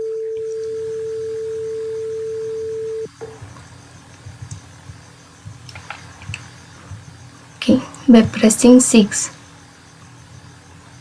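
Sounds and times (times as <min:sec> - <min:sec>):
electronic beep: 0:00.0 - 0:03.1.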